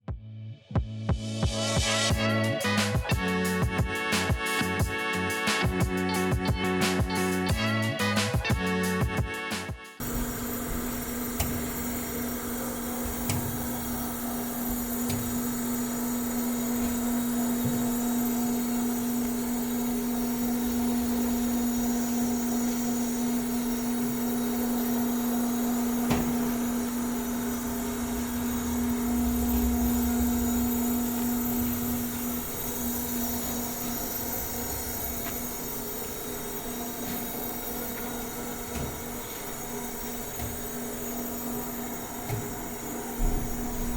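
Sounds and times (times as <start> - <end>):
machinery electric hum: 10.0 - 43.9.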